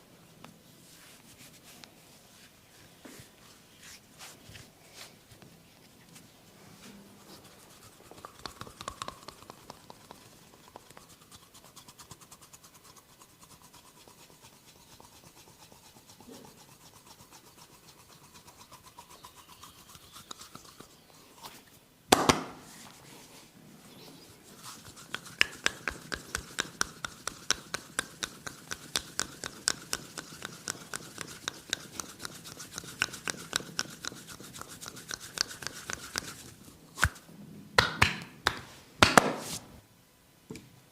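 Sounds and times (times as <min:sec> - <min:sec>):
hands rubbing skin: 0:00.8 - 0:21.6, 0:24.2 - 0:37.2, 0:37.8 - 0:39.8
rhythmic tapping on head: 0:08.0 - 0:11.0, 0:24.8 - 0:36.4.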